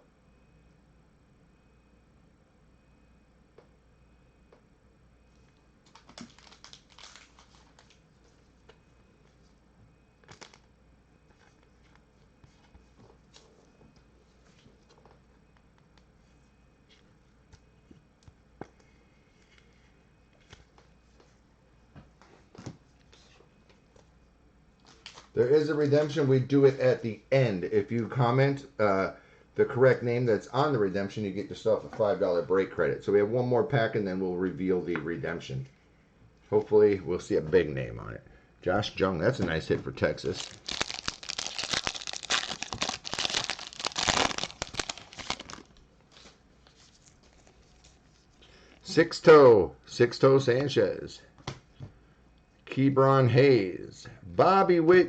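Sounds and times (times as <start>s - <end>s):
foil wrapper tearing and crinkling: 5.8s - 8.0s, 40.2s - 46.3s
trading cards clicking and rustling: 40.2s - 46.4s.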